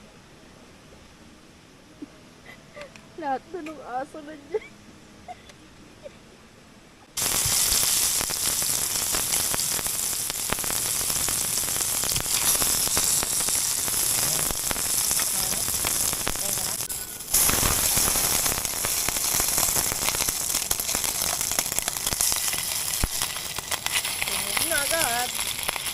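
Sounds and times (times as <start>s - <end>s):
food sizzling in hot oil: 7.2s - 25.9s.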